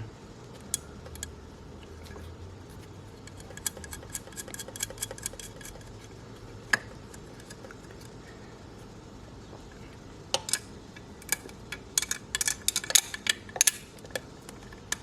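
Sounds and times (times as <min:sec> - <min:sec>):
ratchet wrench clicking: 0:03.3 - 0:05.9.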